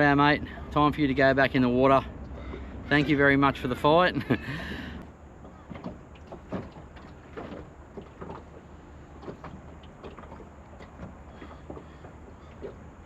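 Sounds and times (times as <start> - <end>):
water splashing: 0.0 - 4.0, 4.6 - 13.0
knocks on boat side: 5.4 - 8.6.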